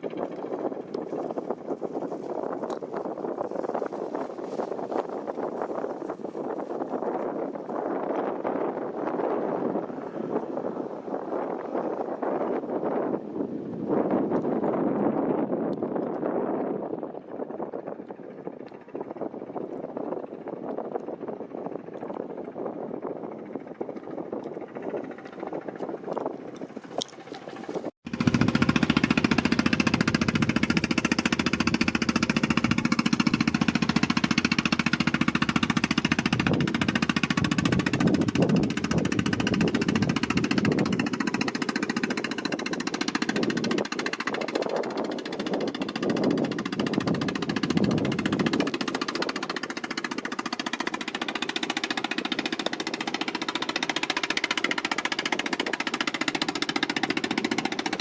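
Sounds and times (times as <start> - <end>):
boat engine chugging: 0.0 - 58.0.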